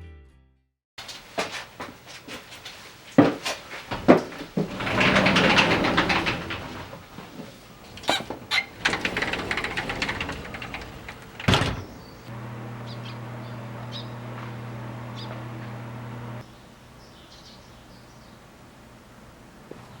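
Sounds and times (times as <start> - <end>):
low mechanical hum: 3.9 - 20.0.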